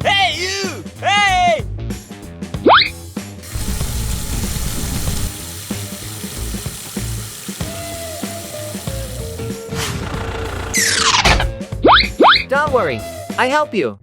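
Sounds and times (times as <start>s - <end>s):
background music: 0.0s - 14.0s
steady hissing noise: 3.5s - 9.5s.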